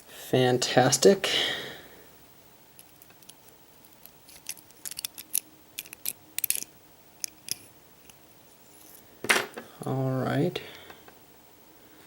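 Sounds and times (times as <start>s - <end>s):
small metal lock parts clicking: 2.8s - 8.2s.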